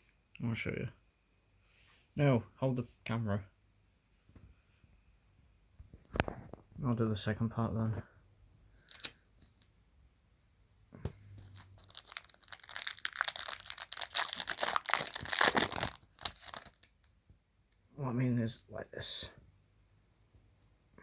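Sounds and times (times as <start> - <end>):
wrapper tearing and crinkling: 8.8 - 9.7, 11.4 - 17.0.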